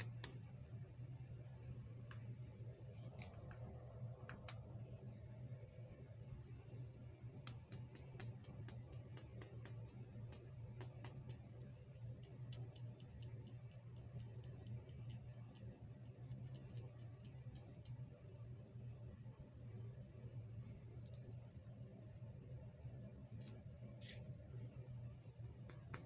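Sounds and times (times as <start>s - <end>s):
faint low hum: 0.0s - 26.0s.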